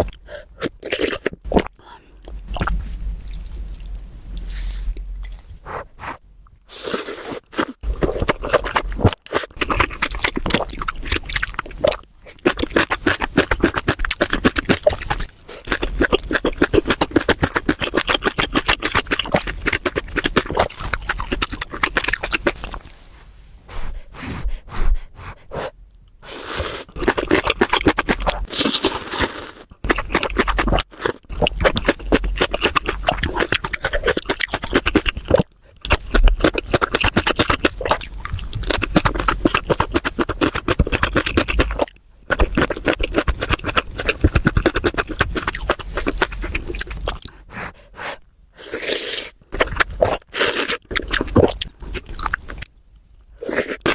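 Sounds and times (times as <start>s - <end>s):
chewing: 0.0s - 5.8s, 7.1s - 23.2s, 25.3s - 53.9s
wet slurping of noodles: 43.2s - 51.6s.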